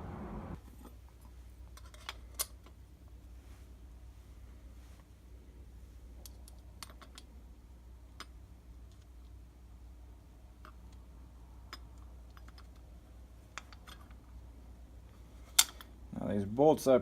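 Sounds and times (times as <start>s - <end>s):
metallic clicks of bolts and nuts: 1.7s - 2.8s, 6.2s - 7.3s, 8.1s - 9.4s, 10.6s - 14.3s, 15.4s - 16.0s.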